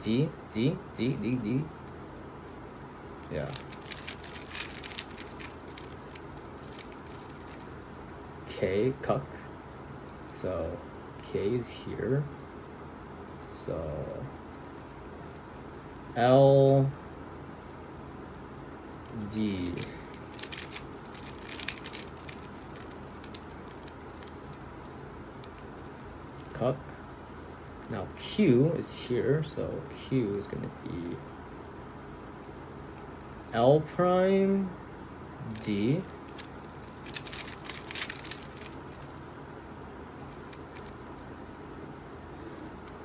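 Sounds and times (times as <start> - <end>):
low background hum: 0.0 - 43.0
room hiss: 0.0 - 43.0
puzzle cube plastic clicks: 1.0 - 8.2, 14.3 - 26.6, 35.5 - 39.4, 40.2 - 41.6, 42.4 - 43.0.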